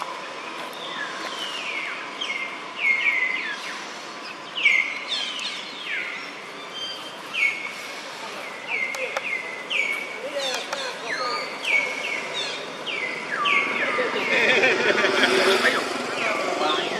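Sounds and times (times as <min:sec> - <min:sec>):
outdoor background noise: 0:00.0 - 0:16.9
high chirping calls: 0:00.4 - 0:14.4.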